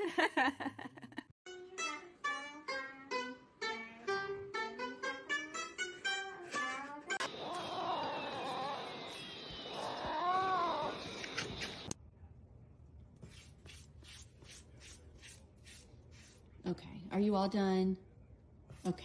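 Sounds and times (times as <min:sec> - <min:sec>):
cat yowling: 0:07.2 - 0:11.6.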